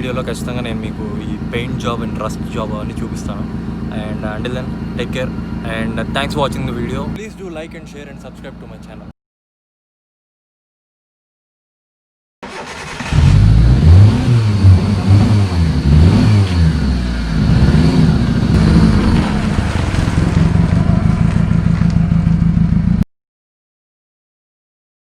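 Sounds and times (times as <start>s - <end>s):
car engine revving and idling: 0.0s - 9.1s, 12.4s - 23.0s.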